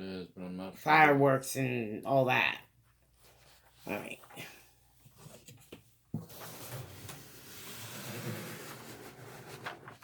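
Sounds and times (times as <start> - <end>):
paper canvas rustling: 3.2 - 10.0.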